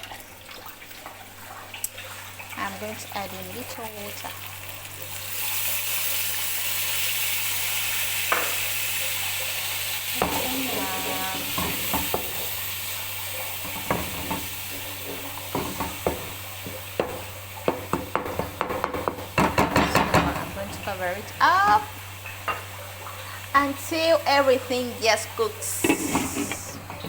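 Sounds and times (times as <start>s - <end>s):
tomato sauce sizzling: 1.8s - 27.0s
spoon scraping a pan: 25.7s - 27.0s.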